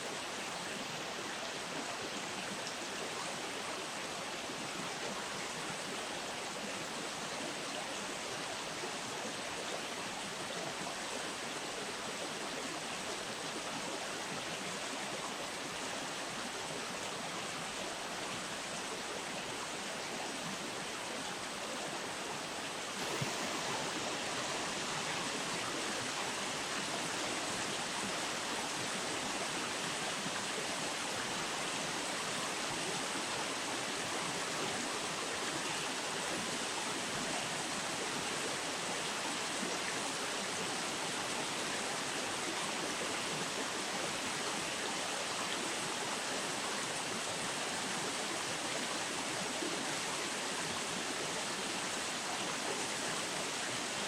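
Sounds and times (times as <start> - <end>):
river water rushing: 17.4 - 54.0.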